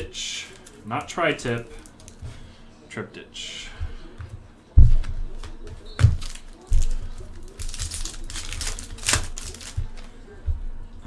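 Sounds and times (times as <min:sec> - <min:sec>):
wrapper crinkling: 0:00.0 - 0:02.3, 0:05.0 - 0:10.2.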